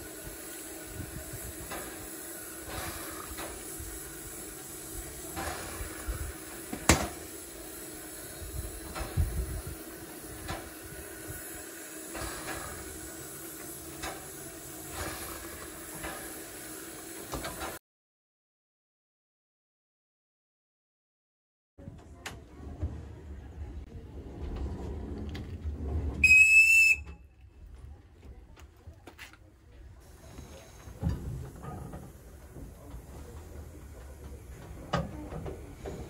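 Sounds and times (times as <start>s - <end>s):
steam locomotive hissing: 0.0s - 17.8s, 26.2s - 27.0s, 30.0s - 36.0s.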